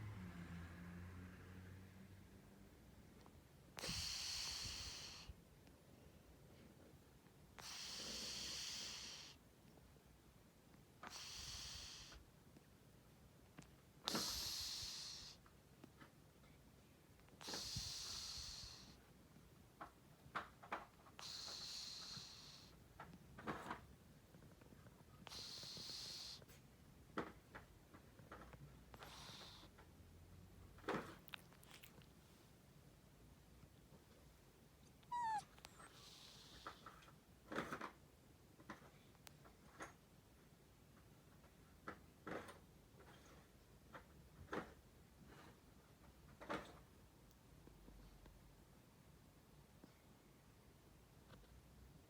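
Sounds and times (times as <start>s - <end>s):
cat snoring: 3.8s - 5.3s, 7.6s - 9.4s, 11.0s - 12.2s, 14.0s - 15.4s, 17.4s - 19.0s, 21.2s - 22.8s, 25.2s - 26.4s, 28.9s - 29.7s, 35.0s - 37.0s
short squeak: 35.0s - 35.6s.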